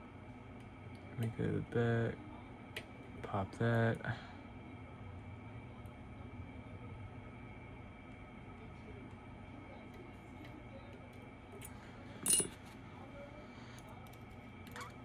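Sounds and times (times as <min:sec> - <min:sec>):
metal clink: 0:12.2 - 0:12.6.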